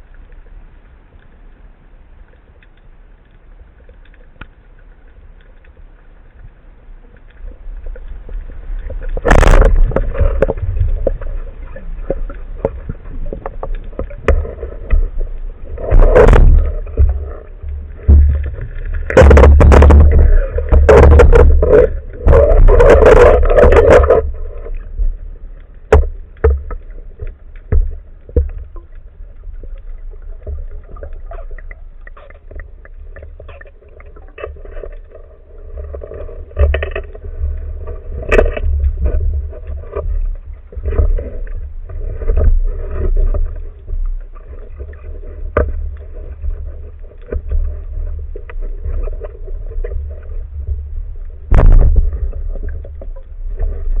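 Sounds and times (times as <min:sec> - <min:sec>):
muffled underwater rumble: 0:00.0 - 0:54.0
sharp clicks and knocks: 0:12.0 - 0:24.8, 0:51.5 - 0:53.2.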